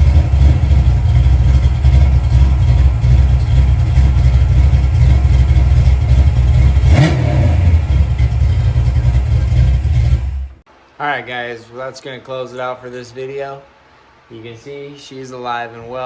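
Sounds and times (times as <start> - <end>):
car engine idling: 0.0 - 10.6
engine throttle blip: 0.0 - 10.6.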